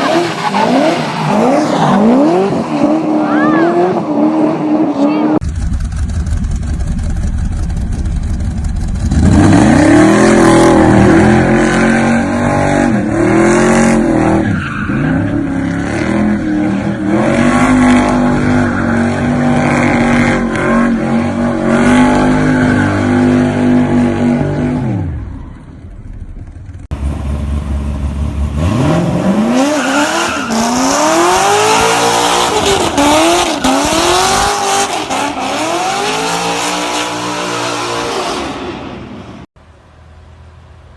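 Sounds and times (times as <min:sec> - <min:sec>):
car engine revving: 0:26.4 - 0:38.6.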